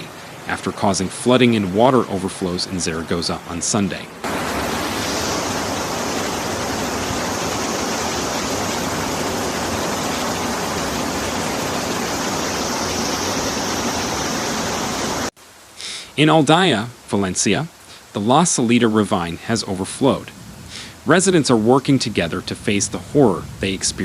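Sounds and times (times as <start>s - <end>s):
fast-flowing water rushing: 0.0s - 24.0s.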